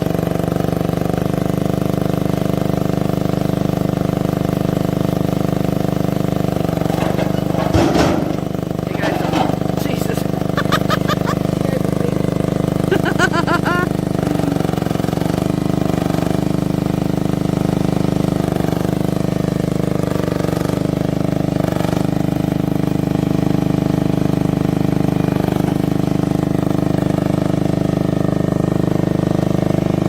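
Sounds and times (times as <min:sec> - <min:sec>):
mini excavator engine running: 0:00.0 - 0:30.0.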